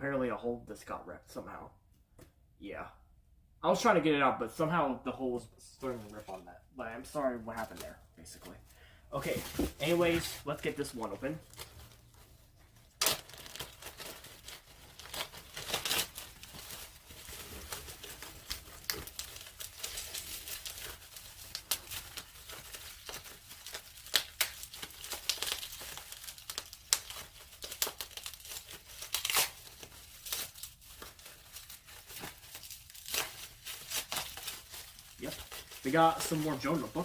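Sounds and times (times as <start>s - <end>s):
wrapping torn and crinkled: 9.2s - 37.0s.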